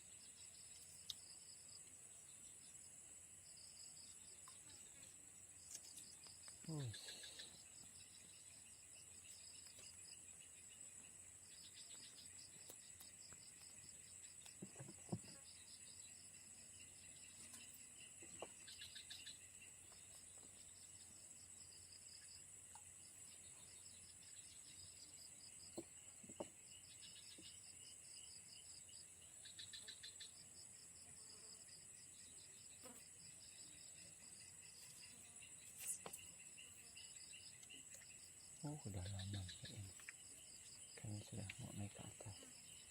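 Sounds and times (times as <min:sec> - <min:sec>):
crickets chirping: 0:00.0 - 0:42.9
rapid insect clicking: 0:00.3 - 0:02.0, 0:05.5 - 0:10.2, 0:11.5 - 0:16.1, 0:34.9 - 0:42.9
high-pitched insect buzz: 0:34.7 - 0:38.2.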